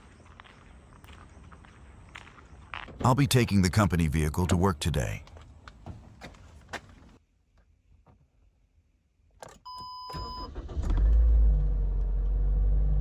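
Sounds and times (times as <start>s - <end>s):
vehicle electronic beep: 9.7s - 10.6s
engine starting and idling: 10.1s - 13.0s.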